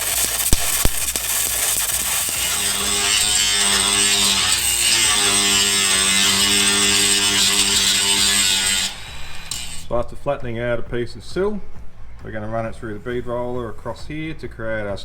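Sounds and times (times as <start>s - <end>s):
electric power tool buzzing: 0.0s - 9.9s.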